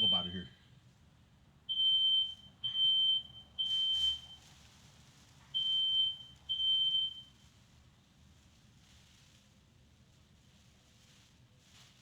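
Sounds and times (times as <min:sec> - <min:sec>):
smoke alarm beeping: 0:00.0 - 0:00.4, 0:05.6 - 0:07.2.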